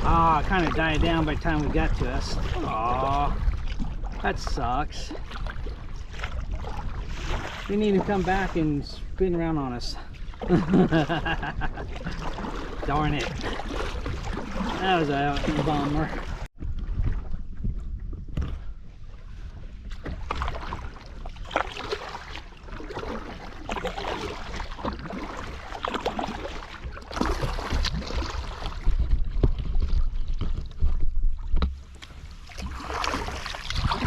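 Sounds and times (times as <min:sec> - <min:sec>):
water splashing against kayak hull: 0:00.0 - 0:34.0
wind rumbling on microphone: 0:00.0 - 0:34.0.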